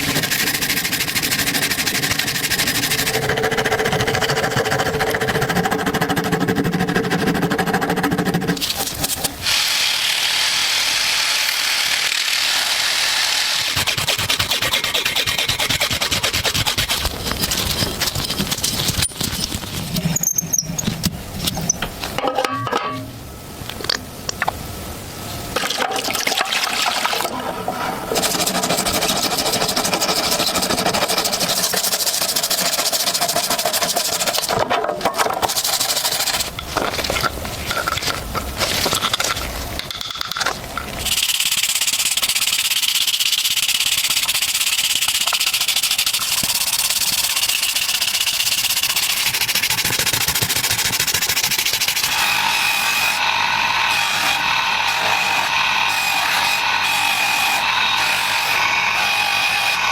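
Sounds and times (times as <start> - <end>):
small power tool whining: 9.1 - 13.8, 52.0 - 59.9
scraping and rubbing metal: 13.6 - 23.2, 27.3 - 42.4.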